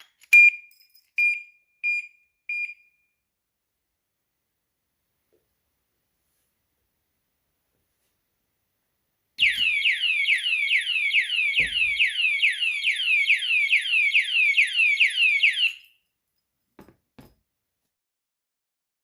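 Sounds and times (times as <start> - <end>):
alarm siren falling chirps: 9.4 - 16.0
knock: 16.8 - 17.4.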